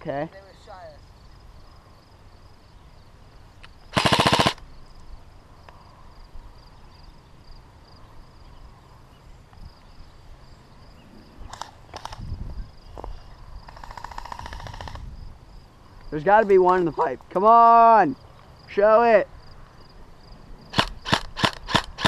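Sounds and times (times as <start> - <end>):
airsoft gun firing full-auto bursts: 3.9 - 4.6, 11.5 - 12.2, 13.8 - 15.0, 20.7 - 22.0.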